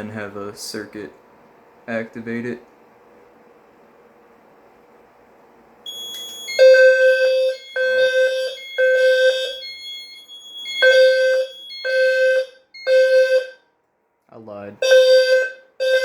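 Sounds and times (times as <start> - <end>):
alarm horn buzzing in pulses: 5.9 - 13.6, 14.8 - 16.0.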